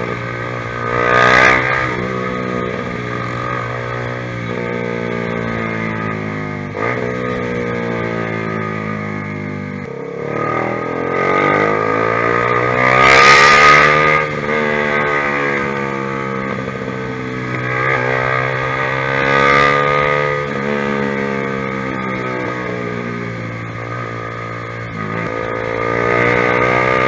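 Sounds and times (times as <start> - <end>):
motorcycle engine revving: 0.0 - 27.0.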